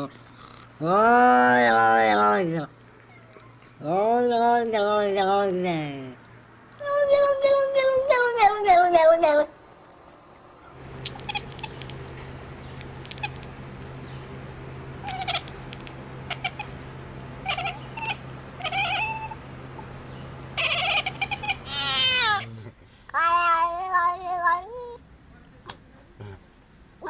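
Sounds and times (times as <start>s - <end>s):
steady low hum: 0.0s - 23.1s
cat meowing: 11.1s - 11.9s, 15.0s - 15.5s, 17.4s - 19.4s, 20.6s - 22.4s.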